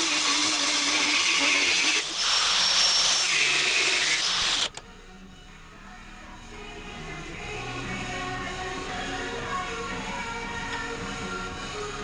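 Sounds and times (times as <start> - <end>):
power tool cutting steel: 0.0 - 4.8.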